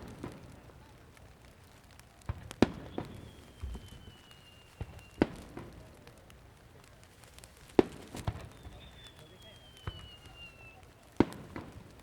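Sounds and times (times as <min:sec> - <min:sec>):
firework shells bursting: 0:02.3 - 0:12.0
whistle firework sliding down: 0:02.6 - 0:05.5, 0:08.1 - 0:10.8.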